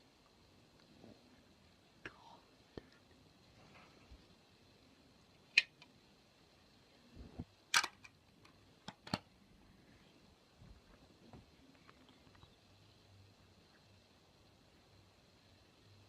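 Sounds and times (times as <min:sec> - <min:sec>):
small objects clicking and knocking: 0:07.7 - 0:09.3.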